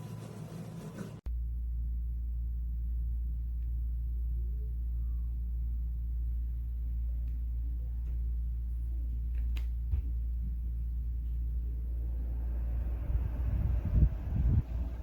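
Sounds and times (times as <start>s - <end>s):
fan air rumble: 0.0s - 15.0s.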